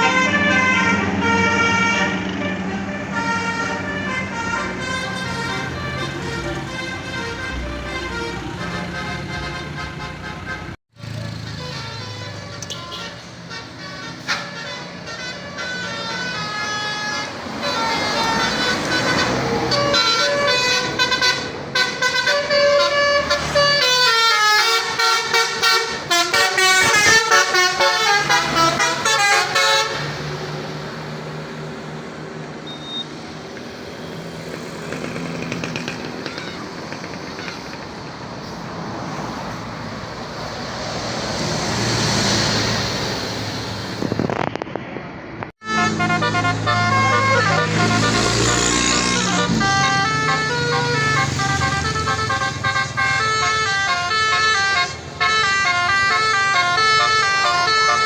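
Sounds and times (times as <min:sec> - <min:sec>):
bus musical horn melody: 0:00.0 - 0:30.6, 0:45.6 - 0:58.0
engine and road noise: 0:00.0 - 0:58.0.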